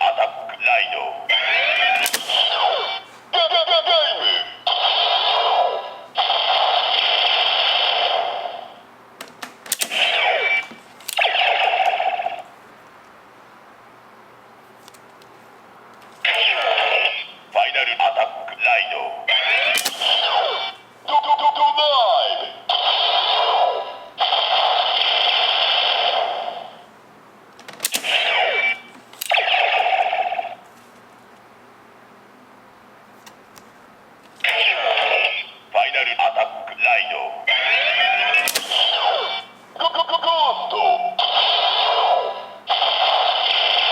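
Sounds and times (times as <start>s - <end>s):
sharp clicks: 1.9s - 2.5s, 19.7s - 20.2s, 38.4s - 39.0s
toy belt electronic sound effects: 9.8s - 12.4s, 19.2s - 21.7s, 27.9s - 30.6s, 34.4s - 43.9s.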